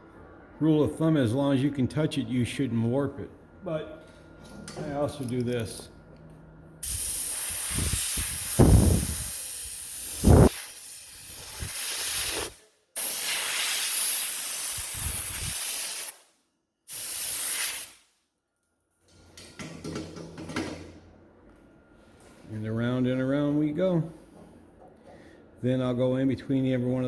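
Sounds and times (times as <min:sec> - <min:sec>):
compressed air hissing: 0:06.8 - 0:16.2, 0:16.9 - 0:18.0.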